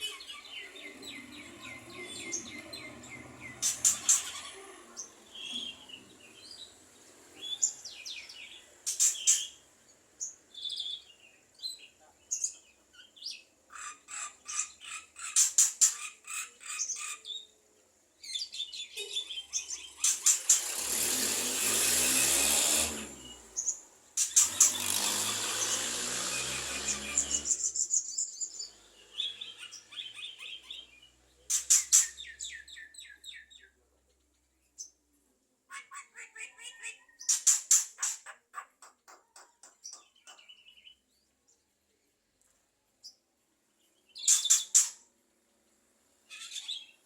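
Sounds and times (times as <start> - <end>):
harsh hissing bird call: 24.2 - 27.8.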